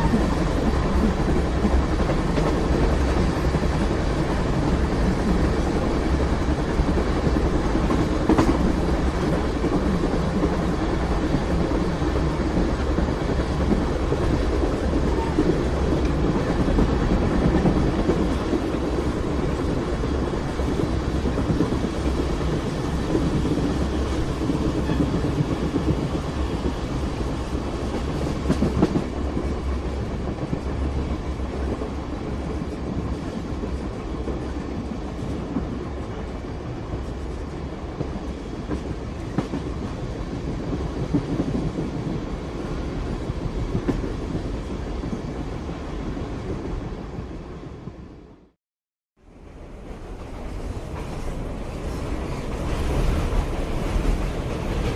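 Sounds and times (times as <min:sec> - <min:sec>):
train wheels rumbling on rails: 0:00.0 - 0:48.6, 0:49.2 - 0:54.9.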